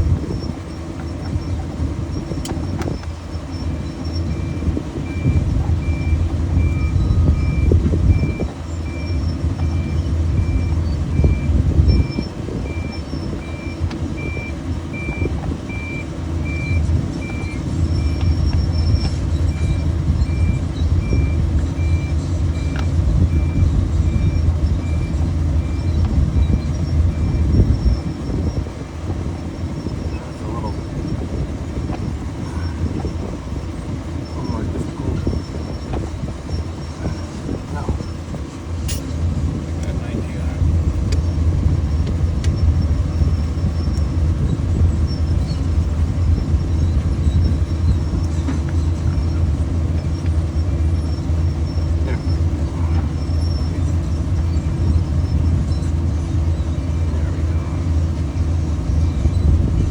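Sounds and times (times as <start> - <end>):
engine rumbling: 0.0 - 59.9
backup alarm beeping: 2.1 - 28.6.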